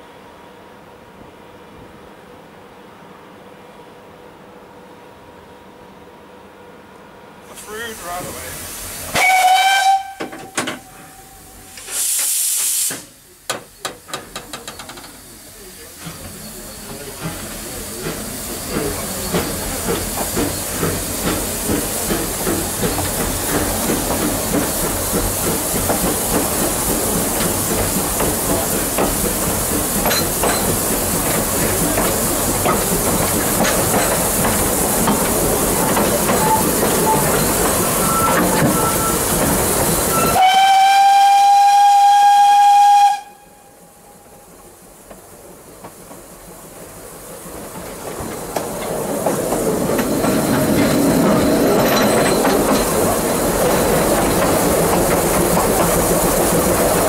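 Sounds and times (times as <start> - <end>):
steam hissing: 7.5 - 57.0
steam locomotive exhaust beats: 7.6 - 57.0
steam whistle blast: 9.1 - 13.0, 36.4 - 39.4, 40.1 - 44.0.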